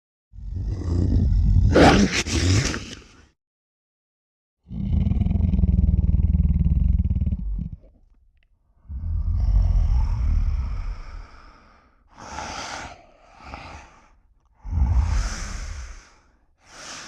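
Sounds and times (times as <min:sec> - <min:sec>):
cartoon animal growl: 0:00.4 - 0:03.1, 0:04.6 - 0:08.0
breathy hisses: 0:09.4 - 0:17.0.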